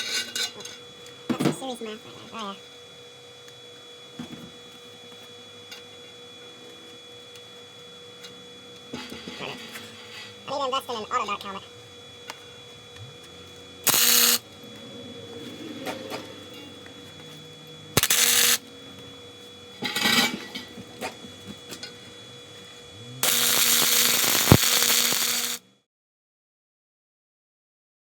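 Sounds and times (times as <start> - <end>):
welder arc crackling hiss: 13.9 - 14.4, 18.0 - 18.7, 23.2 - 25.6.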